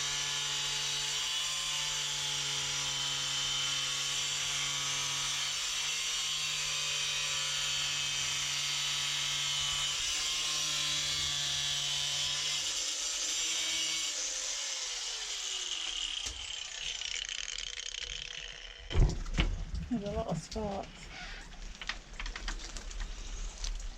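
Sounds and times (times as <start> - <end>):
angle grinder cutting metal: 0.0 - 19.0.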